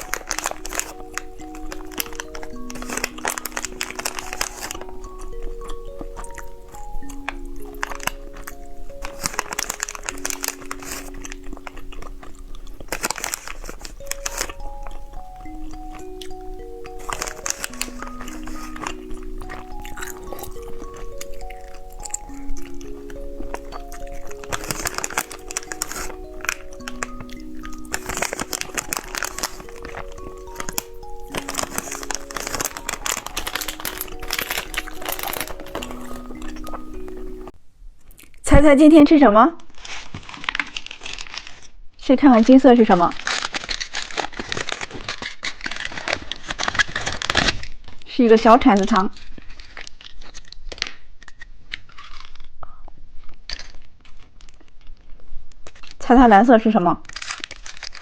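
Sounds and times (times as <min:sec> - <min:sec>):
soft background music: 0:00.0 - 0:37.6
candy crunching while chewed: 0:00.0 - 0:38.4, 0:42.4 - 0:48.0, 0:48.6 - 0:56.0, 0:57.0 - 0:58.0
plastic wrappers crinkling: 0:00.0 - 0:38.4, 0:39.6 - 0:58.0.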